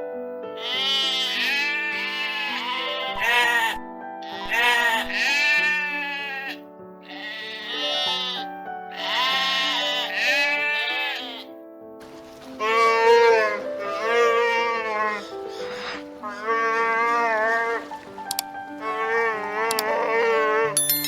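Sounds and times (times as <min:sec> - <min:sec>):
sheep bleating: 0:00.6 - 0:20.8
music with long held notes: 0:12.0 - 0:21.0.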